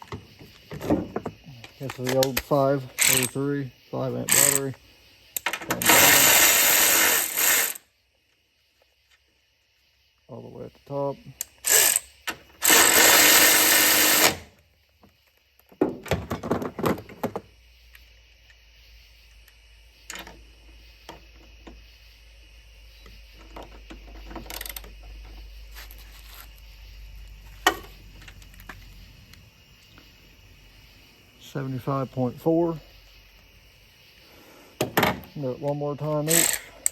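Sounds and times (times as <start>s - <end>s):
cordless ratchet driving a bolt: 3.0s - 3.3s, 36.3s - 36.9s.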